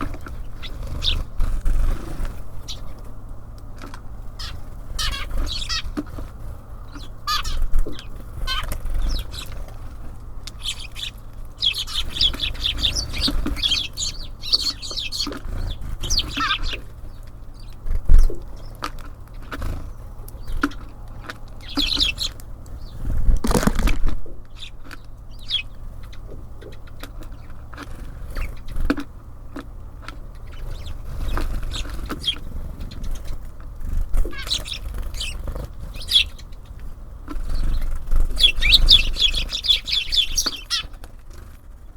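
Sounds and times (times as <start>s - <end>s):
small birds chirping: 0.0s - 41.9s
wing flaps: 23.0s - 24.3s
sharp pecking knocks: 23.3s - 25.1s.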